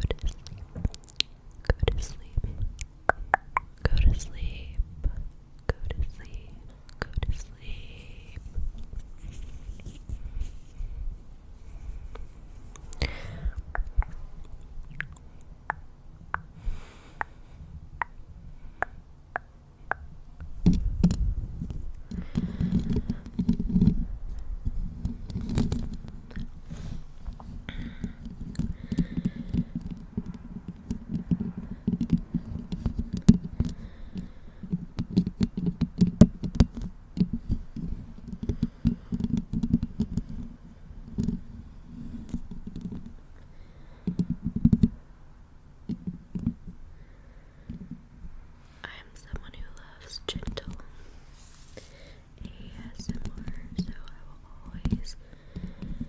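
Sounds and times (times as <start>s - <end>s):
fingers scratching a microphone: 7.1s - 13.0s, 20.5s - 27.6s.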